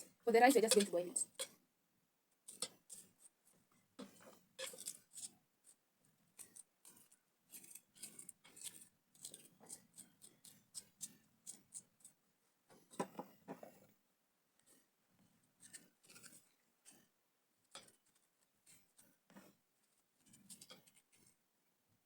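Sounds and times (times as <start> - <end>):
knife cutting vegetables: 0.4 - 1.5, 2.5 - 3.1, 4.0 - 5.3, 6.4 - 12.1.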